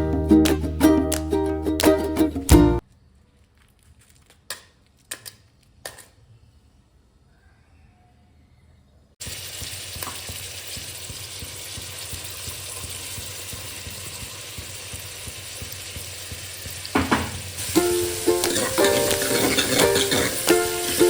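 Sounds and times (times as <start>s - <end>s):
food sizzling in hot oil: 9.2s - 21.0s.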